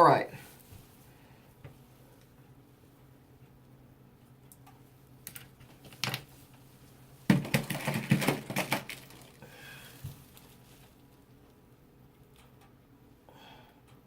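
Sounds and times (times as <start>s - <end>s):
small hard objects clicking: 7.3s - 9.4s.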